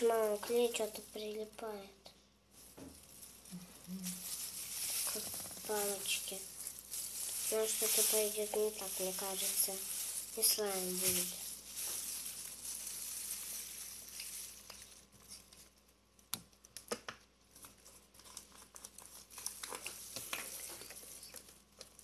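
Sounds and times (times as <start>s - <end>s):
slime being stirred: 3.2s - 15.8s, 17.6s - 22.0s.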